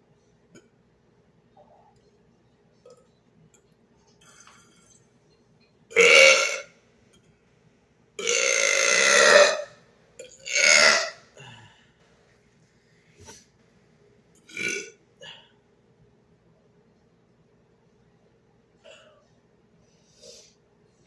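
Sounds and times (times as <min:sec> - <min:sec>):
man belching: 0:05.9 - 0:06.7, 0:08.2 - 0:09.7, 0:10.3 - 0:11.2, 0:14.5 - 0:14.9.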